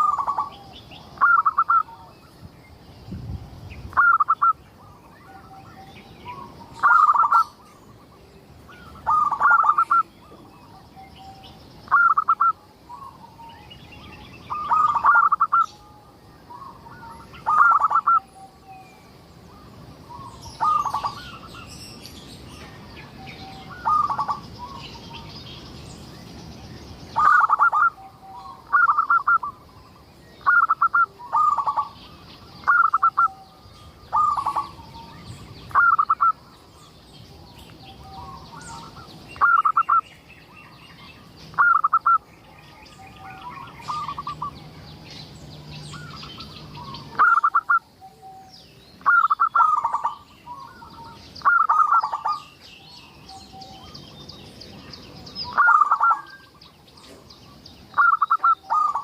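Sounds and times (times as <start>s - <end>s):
dove cooing: 0.0s - 2.1s, 3.9s - 7.6s, 8.8s - 13.5s, 14.4s - 18.8s, 19.5s - 21.5s, 23.2s - 25.2s, 27.2s - 29.7s, 30.4s - 32.0s, 32.6s - 35.1s, 35.7s - 36.4s, 38.0s - 40.0s, 41.5s - 42.2s, 43.2s - 44.6s, 45.9s - 52.5s, 55.4s - 56.4s, 57.9s - 59.0s
small birds chirping: 0.0s - 59.0s.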